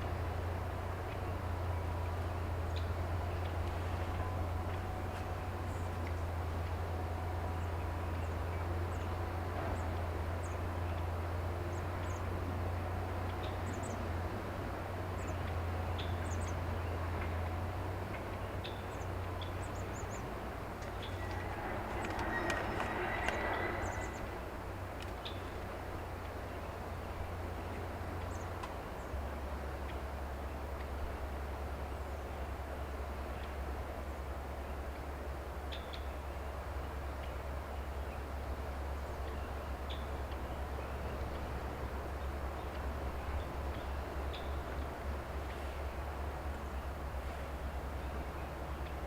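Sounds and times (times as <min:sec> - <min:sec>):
excavator engine drone: 0:00.0 - 0:49.0
small birds chirping: 0:13.2 - 0:14.1, 0:15.1 - 0:24.4, 0:35.6 - 0:49.0.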